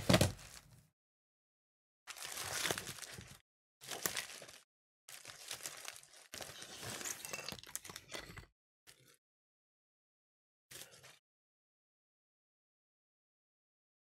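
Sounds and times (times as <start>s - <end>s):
plastic packaging crinkling: 2.1s - 8.0s.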